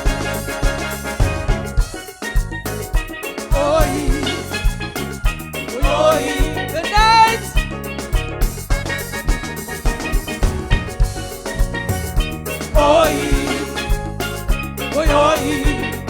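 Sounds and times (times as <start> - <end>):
bass: 0.0 - 16.0
steel pan melody: 0.0 - 16.0
kick drum beat: 10.0 - 14.7.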